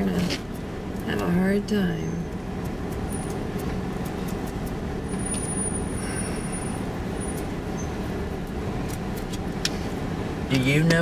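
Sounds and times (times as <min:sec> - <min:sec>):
car driving road noise: 0:00.0 - 0:11.0.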